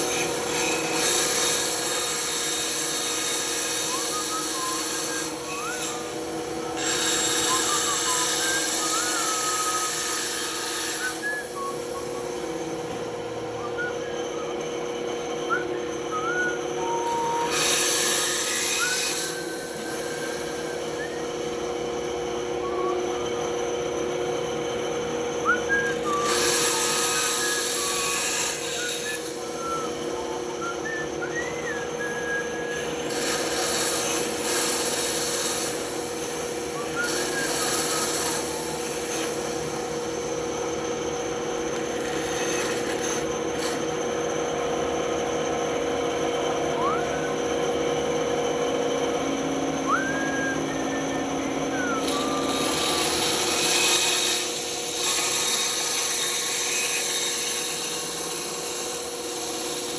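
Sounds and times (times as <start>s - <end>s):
blade cutting wood: 0.0s - 6.2s, 6.8s - 11.7s, 15.5s - 21.2s, 25.4s - 30.0s, 30.6s - 39.8s, 41.6s - 44.0s, 49.8s - 59.9s
bandsaw humming: 0.0s - 59.9s.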